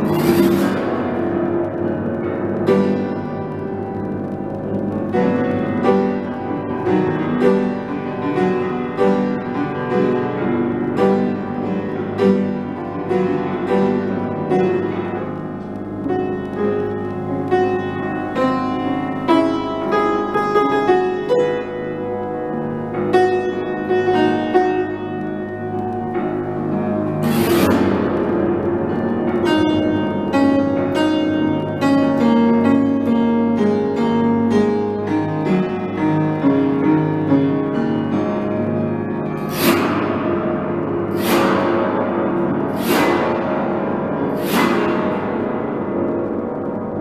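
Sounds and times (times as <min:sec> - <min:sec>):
bright noisy burst: 0:00.0 - 0:10.4
piano: 0:00.0 - 0:47.0.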